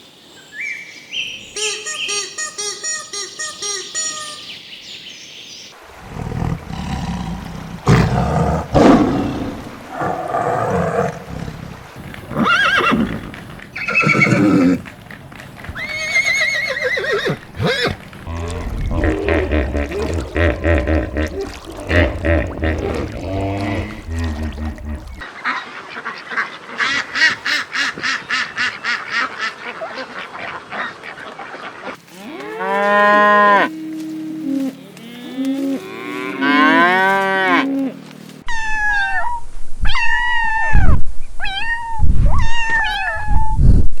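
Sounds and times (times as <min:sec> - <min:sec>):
honking calls: 0:12.0 - 0:26.1
farm animals calling: 0:12.0 - 0:38.0
cow mooing: 0:17.6 - 0:25.2, 0:32.2 - 0:38.0.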